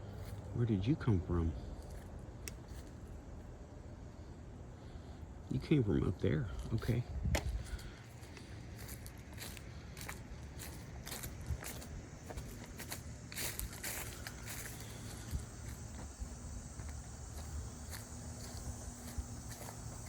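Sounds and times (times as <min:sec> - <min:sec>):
footsteps crunching outdoors: 0:00.0 - 0:03.6, 0:06.1 - 0:20.0
high-pitched insect calls: 0:08.0 - 0:20.0.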